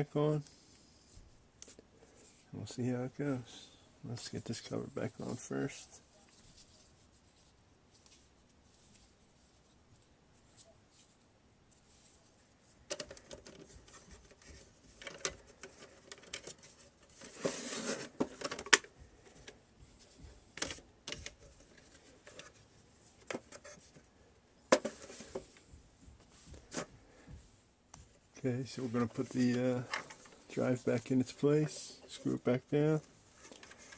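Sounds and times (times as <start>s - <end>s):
plastic parts clicking and tapping: 12.9s - 19.6s, 20.5s - 22.6s.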